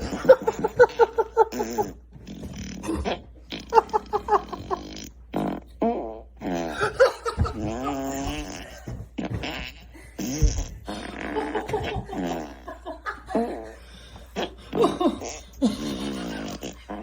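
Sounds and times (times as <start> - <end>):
hearty laughter: 0.0 - 2.0, 2.8 - 4.9, 6.6 - 9.0, 9.9 - 17.0
fart sound effects: 0.0 - 12.8, 14.3 - 17.0.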